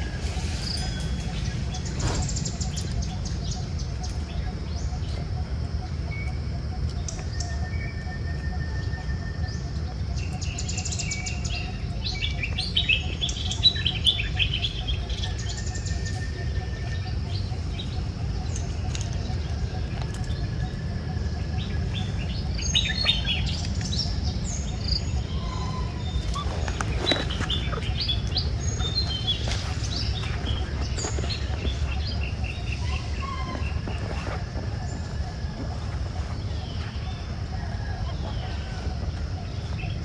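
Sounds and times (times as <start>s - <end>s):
animal chirps and squeaks: 21.7s - 37.3s.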